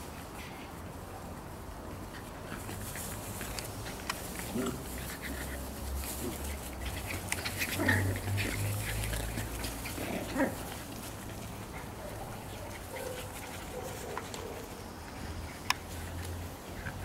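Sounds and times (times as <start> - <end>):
puppies yelping and whining: 4.9 - 10.7.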